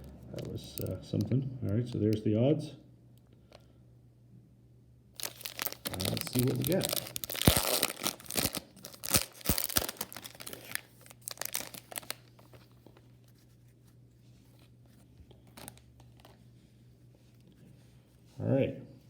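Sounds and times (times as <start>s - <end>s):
faint hum: 0.0s - 19.0s
wrapper tearing and crinkling: 5.2s - 12.8s.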